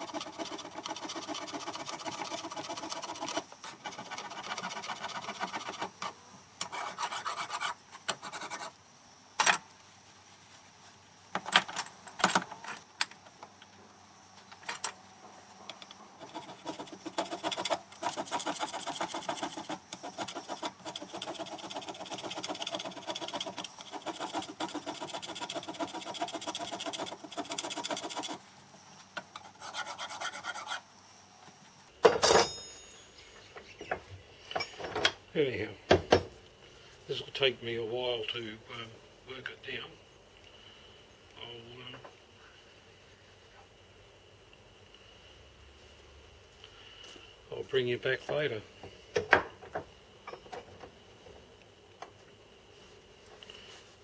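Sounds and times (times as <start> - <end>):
metal filing strokes: 0.0 - 8.8, 16.2 - 28.4, 29.3 - 30.8.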